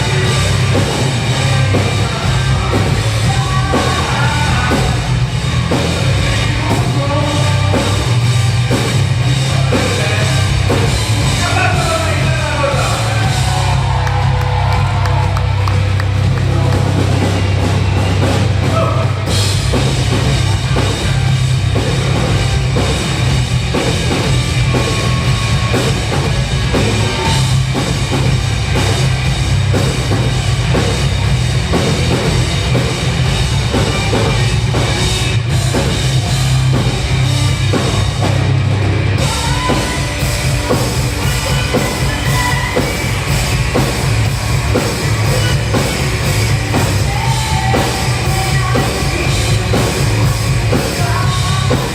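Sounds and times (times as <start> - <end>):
drum kit: 0.0 - 51.9
heavy bass: 0.0 - 51.9
live rock band playing: 0.0 - 51.9.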